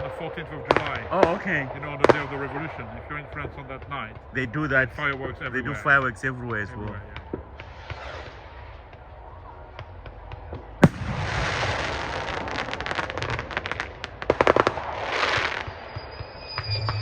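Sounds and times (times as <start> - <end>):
fireworks crackling: 0.0 - 17.0
fireworks popping: 0.0 - 17.0
loud firework bang: 0.7 - 3.5, 10.8 - 17.0.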